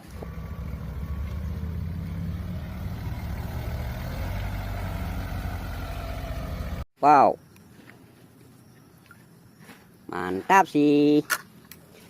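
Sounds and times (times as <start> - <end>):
engine idling: 0.0 - 6.8.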